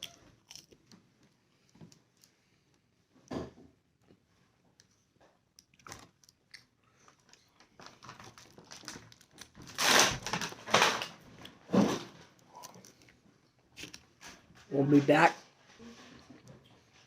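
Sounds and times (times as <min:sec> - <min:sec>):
crunching food and rustling: 0:00.0 - 0:02.9, 0:04.1 - 0:15.1
packaging clicks and crinkles: 0:05.6 - 0:13.1.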